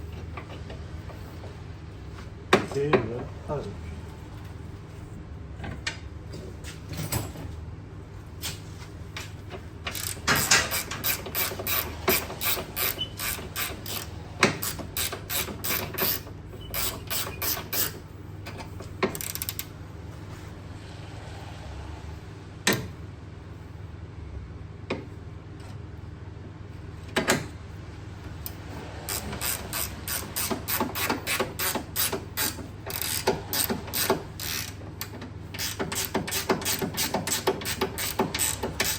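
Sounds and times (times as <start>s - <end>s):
steady low hum: 0.0s - 17.1s
ratchet wrench clicking: 9.9s - 16.2s, 16.8s - 18.0s, 19.1s - 19.7s, 28.4s - 38.9s.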